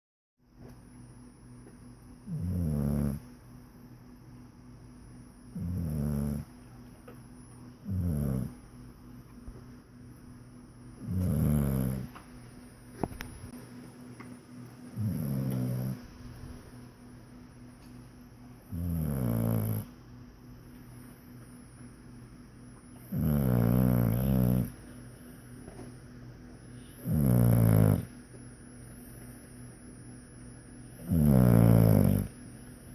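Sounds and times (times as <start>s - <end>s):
low snoring: 2.2s - 3.3s, 5.5s - 6.6s, 7.8s - 8.6s, 11.0s - 12.2s, 14.9s - 16.7s, 18.7s - 19.9s, 23.0s - 24.8s, 26.8s - 28.2s, 30.9s - 32.4s.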